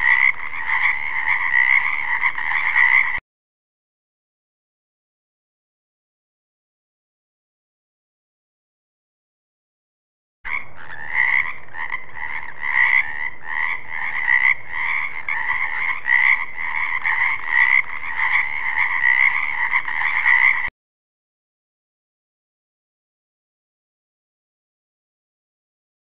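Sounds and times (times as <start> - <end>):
frog croaking: 0.0 - 3.2, 10.5 - 20.7.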